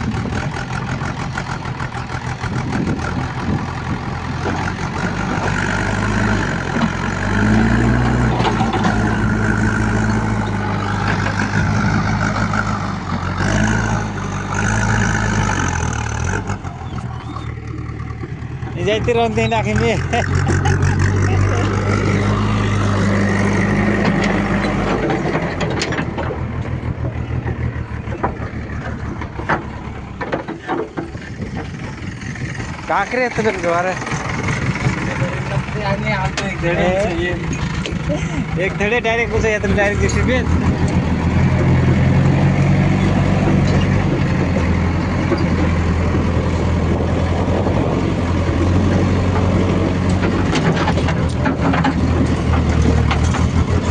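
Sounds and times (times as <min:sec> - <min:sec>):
heavy vehicle engine idling: 0:00.0 - 0:53.9
sharp clicks and knocks: 0:06.5 - 0:14.0, 0:19.8 - 0:36.6, 0:39.9 - 0:53.9.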